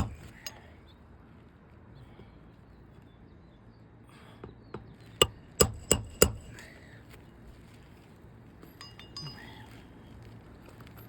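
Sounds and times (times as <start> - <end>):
hammer striking a nail: 0.0 - 0.5, 5.2 - 6.6.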